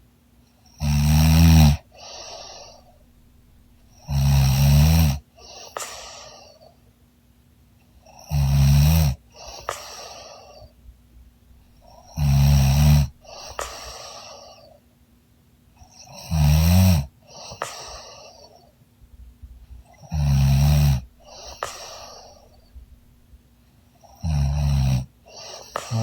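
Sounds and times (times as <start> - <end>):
woman snoring: 0.8 - 3.0, 3.9 - 6.0, 8.2 - 10.6, 11.8 - 14.7, 16.0 - 18.5, 20.0 - 22.7, 24.1 - 26.0
breathy exhale: 1.9 - 3.1, 9.3 - 10.8, 13.1 - 14.8, 20.9 - 22.8, 25.3 - 26.0.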